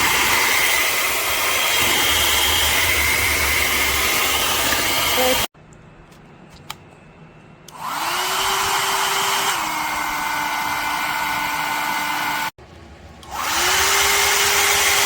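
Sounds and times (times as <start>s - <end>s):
hair dryer whining: 0.0s - 5.5s, 7.7s - 12.6s, 13.2s - 15.0s.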